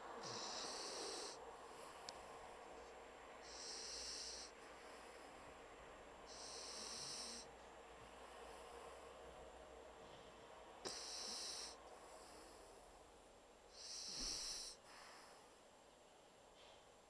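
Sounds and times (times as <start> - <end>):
puppy snoring: 0.0 - 1.9, 3.4 - 5.2, 6.3 - 7.6, 10.8 - 12.6, 13.7 - 14.9.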